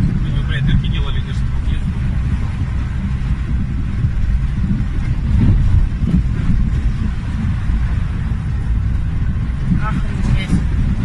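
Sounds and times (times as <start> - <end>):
engine low rumble: 0.0 - 11.0.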